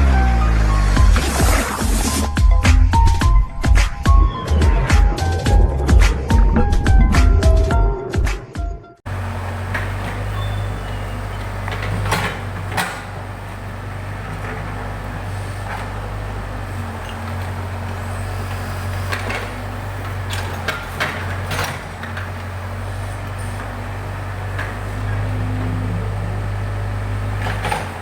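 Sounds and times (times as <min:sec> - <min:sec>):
diesel engine running: 0:00.0 - 0:07.9, 0:09.0 - 0:28.0
sharp knocks and clanks: 0:09.1 - 0:25.4.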